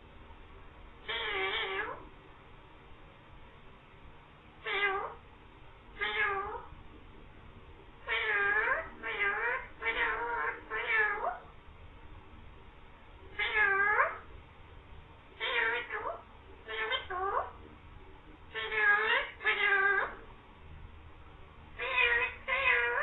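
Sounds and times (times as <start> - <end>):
parrot imitating cat meow: 1.0 - 2.1, 4.6 - 5.2, 6.0 - 6.7, 8.0 - 11.4, 13.3 - 14.3, 15.4 - 17.5, 18.5 - 20.2, 21.8 - 23.0.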